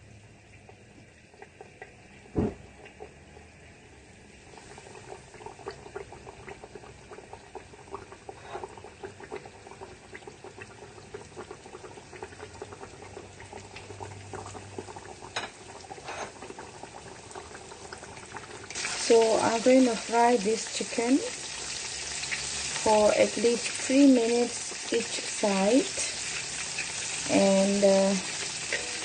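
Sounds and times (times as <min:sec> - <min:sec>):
chicken deep-frying in oil: 0:00.0 - 0:29.0
loud thump: 0:02.4 - 0:02.6.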